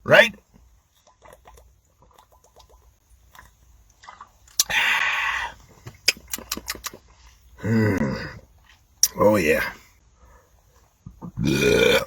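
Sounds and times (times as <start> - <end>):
gulping: 11.2 - 12.0.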